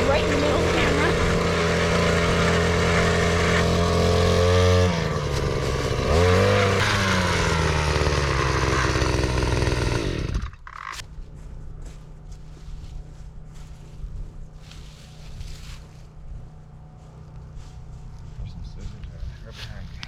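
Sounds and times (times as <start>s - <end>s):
small engine revving: 0.0s - 11.0s
faint wind: 0.0s - 20.0s.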